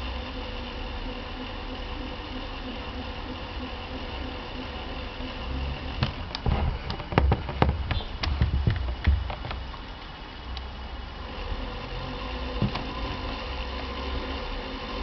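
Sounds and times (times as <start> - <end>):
laptop hum with whining tones: 0.0 - 15.0
sharp clicks and knocks: 6.0 - 10.7, 12.6 - 13.2.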